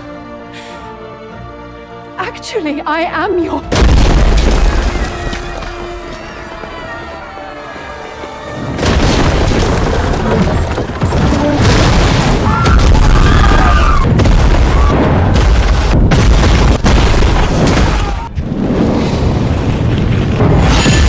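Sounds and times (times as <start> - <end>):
dramatic music: 0.0 - 18.0
explosion booms and crashes: 3.7 - 5.7, 8.7 - 21.0.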